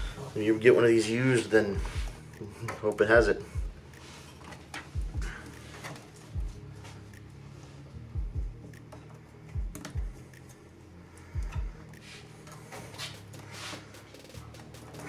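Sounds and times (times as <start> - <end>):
music with deep kick drum: 0.0 - 0.4, 1.7 - 2.5, 3.1 - 4.2, 4.8 - 7.3, 8.0 - 10.5, 11.2 - 12.1, 12.8 - 15.0.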